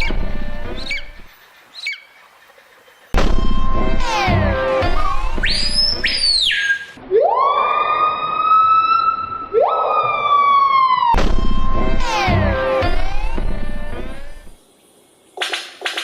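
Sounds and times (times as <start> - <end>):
siren-like wailing: 3.3 - 5.7, 7.0 - 14.6.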